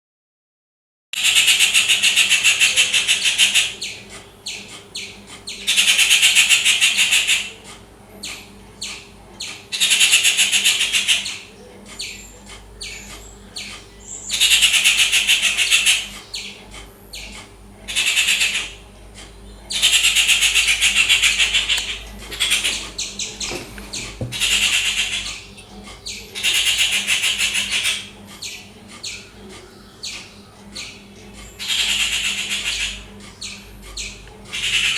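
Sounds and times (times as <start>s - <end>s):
bird chattering notes: 17.2s - 34.9s
bird giving harsh grating calls: 17.9s - 34.9s.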